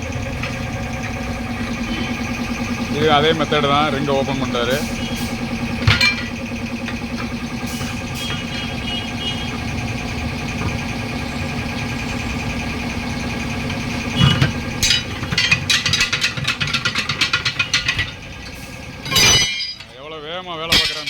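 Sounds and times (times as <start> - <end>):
pulsing machine hum: 0.0 - 19.8
sharp metallic knocks: 19.0 - 19.9.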